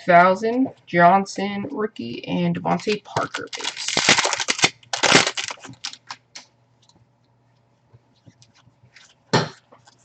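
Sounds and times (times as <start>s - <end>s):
cards clicking and ticking: 2.8s - 6.4s.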